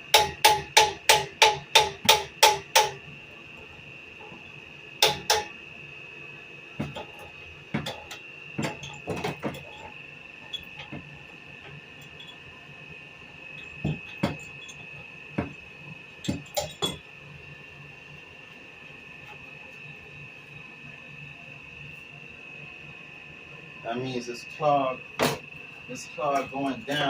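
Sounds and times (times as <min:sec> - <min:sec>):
steady high-pitched tone: 0:23.8 - 0:27.0.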